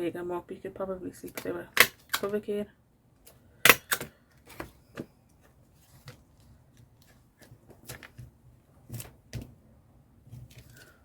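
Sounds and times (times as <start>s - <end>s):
paper rustling: 5.4s - 9.5s, 10.2s - 11.0s.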